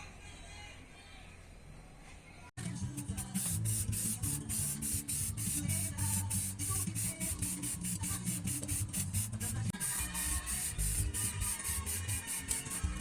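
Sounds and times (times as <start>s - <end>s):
fast hi-hat beat: 2.9s - 13.0s.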